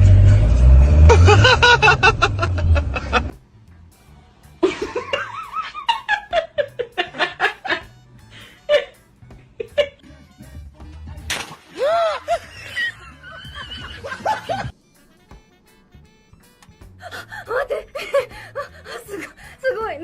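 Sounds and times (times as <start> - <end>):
low rumble: 0.0 - 3.3
high laugh falling in pitch: 1.0 - 3.4, 4.6 - 7.9, 11.8 - 14.7
people laughing hard: 1.1 - 3.4, 4.6 - 7.9, 11.8 - 14.7, 17.0 - 19.4.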